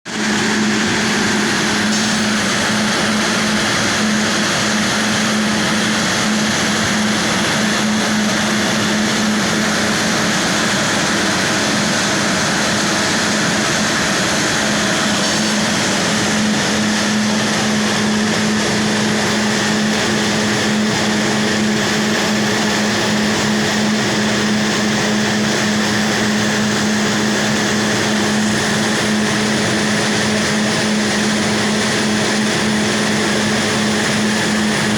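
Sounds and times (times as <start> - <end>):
grain dryer fan rushing air: 0.0 - 34.9
low machine hum: 0.1 - 34.9.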